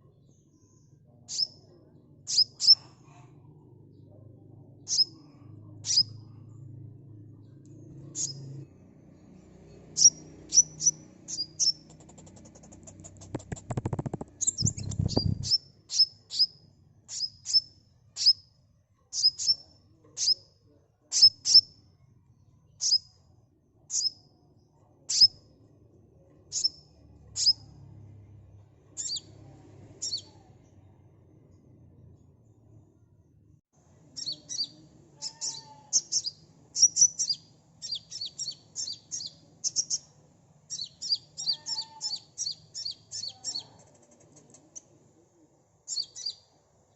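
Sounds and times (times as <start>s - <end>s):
bird chirping: 0.2s - 2.9s, 3.9s - 6.6s, 7.4s - 20.5s, 21.1s - 21.8s, 22.7s - 23.2s, 23.9s - 24.3s, 25.1s - 25.5s, 26.5s - 27.9s, 28.9s - 30.5s, 34.1s - 43.8s, 45.9s - 46.6s
bird trill: 1.3s - 1.7s, 2.3s - 2.9s, 4.8s - 6.4s, 8.1s - 8.6s, 9.9s - 18.5s, 21.1s - 21.7s, 22.7s - 23.2s, 26.5s - 27.8s, 29.0s - 29.4s, 30.0s - 30.4s, 34.2s - 40.1s, 40.7s - 43.7s, 45.9s - 46.5s.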